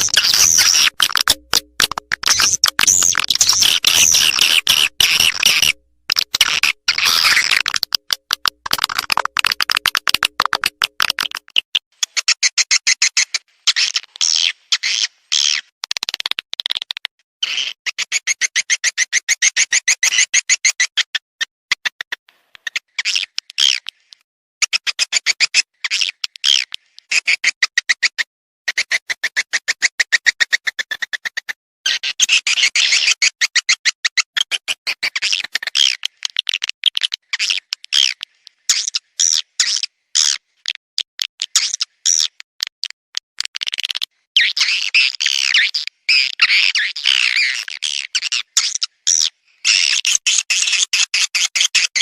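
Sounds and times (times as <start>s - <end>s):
recorded swiftlet twittering: 0.0s - 11.4s.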